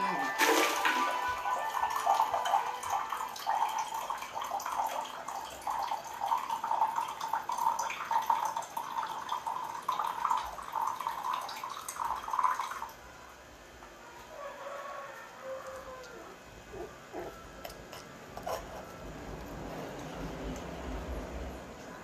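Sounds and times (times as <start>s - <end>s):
water running and splashing: 0.3s - 1.3s.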